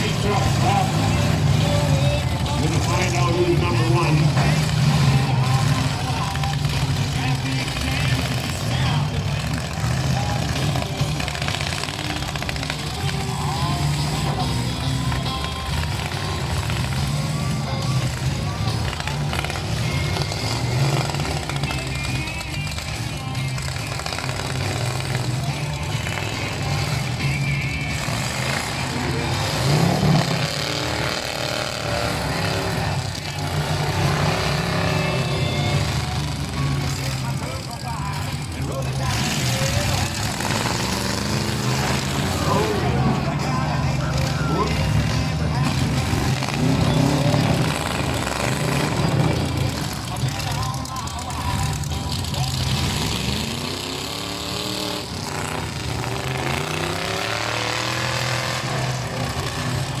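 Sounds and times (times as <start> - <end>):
truck engines revving: 0.0 - 60.0.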